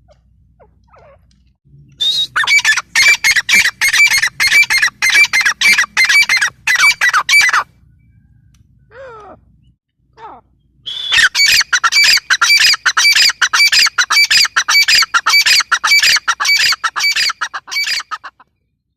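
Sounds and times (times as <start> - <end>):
francolin harsh calling: 2.0 - 7.6, 10.2 - 18.4.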